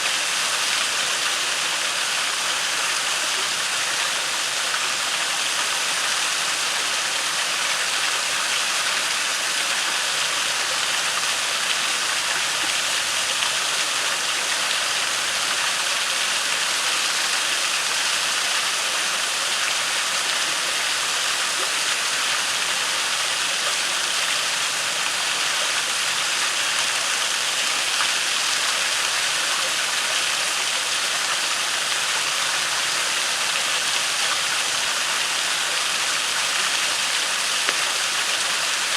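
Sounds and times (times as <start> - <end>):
waterfall rushing into pool: 0.0 - 38.9.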